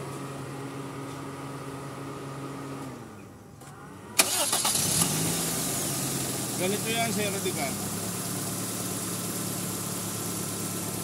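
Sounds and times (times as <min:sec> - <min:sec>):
engine cranking and starting: 0:03.6 - 0:05.4
car engine idling: 0:03.9 - 0:11.0.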